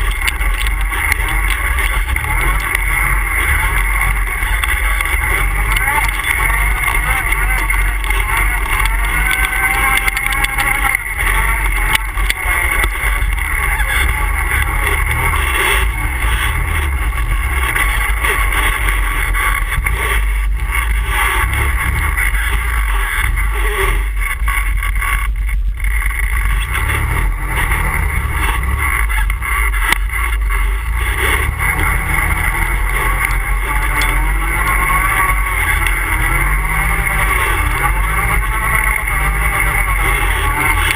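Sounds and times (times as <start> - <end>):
atv engine running: 0.0 - 40.9.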